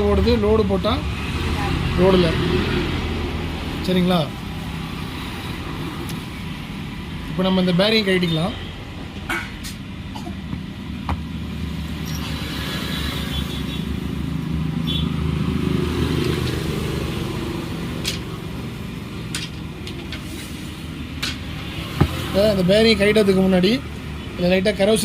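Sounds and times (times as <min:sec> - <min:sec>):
vehicle engine humming: 0:08.8 - 0:24.2.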